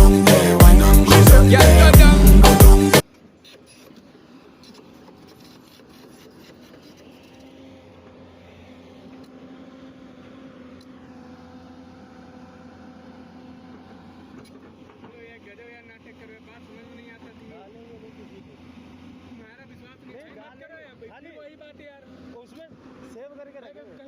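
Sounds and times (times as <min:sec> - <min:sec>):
heavy machine engine hum: 0:00.0 - 0:24.0
phone handling rubbing and clicking: 0:03.1 - 0:07.7.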